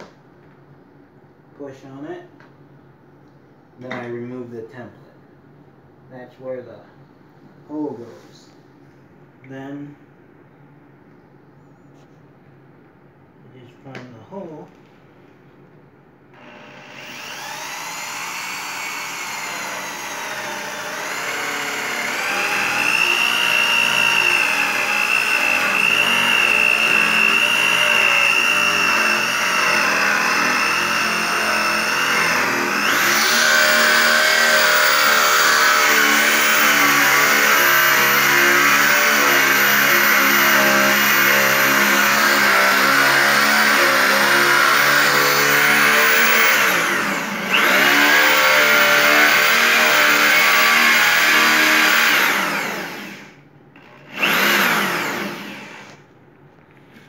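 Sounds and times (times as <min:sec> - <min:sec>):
electric drill boring into wood: 0:16.4 - 0:56.0.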